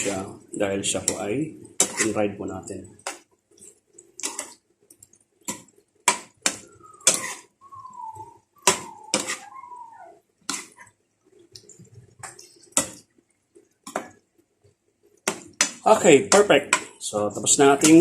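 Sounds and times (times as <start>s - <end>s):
spatula clanking on a pan: 1.8s - 2.1s, 5.5s - 7.5s, 8.6s - 9.4s, 15.2s - 16.9s, 17.8s - 18.0s
wavering sliding tone: 6.6s - 10.2s.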